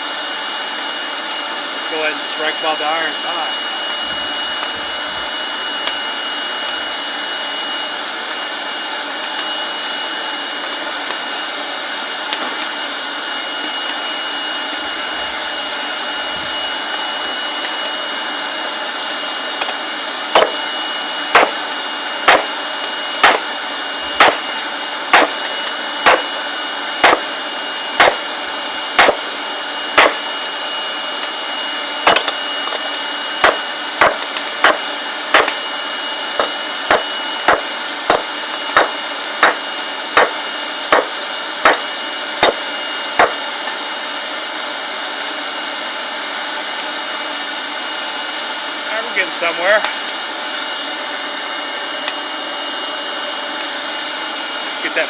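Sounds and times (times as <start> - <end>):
hammer striking metal on anvil: 20.4 - 20.6, 21.4 - 21.6, 22.3 - 22.5, 23.2 - 23.5, 24.2 - 24.4, 25.2 - 25.4, 26.1 - 26.3, 27.0 - 27.3, 28.0 - 28.2, 29.0 - 29.2, 30.0 - 30.2, 33.4 - 35.6, 36.4 - 39.6, 40.2 - 42.6, 43.2 - 43.4.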